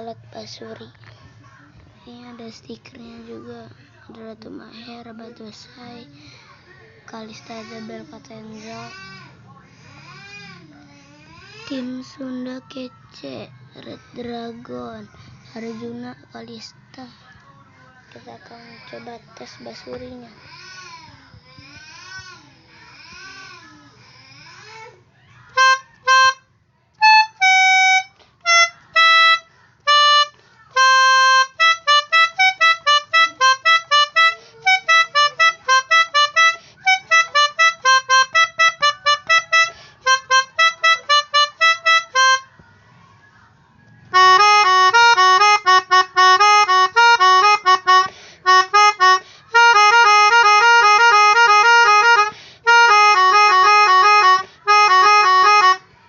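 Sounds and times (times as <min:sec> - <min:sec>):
electronic horn playing reedy tunes: 0:27.0 - 0:42.4, 0:44.2 - 0:55.8.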